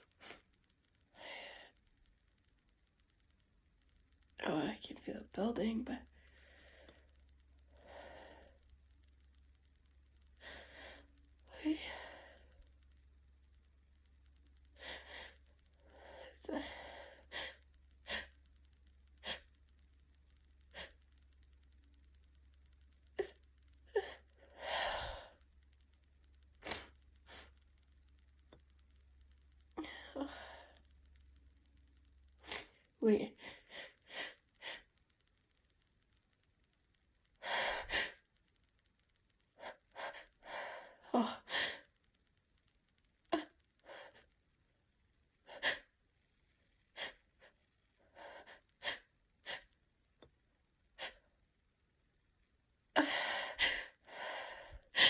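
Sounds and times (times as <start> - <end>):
woman gasping: 53.0 - 55.0.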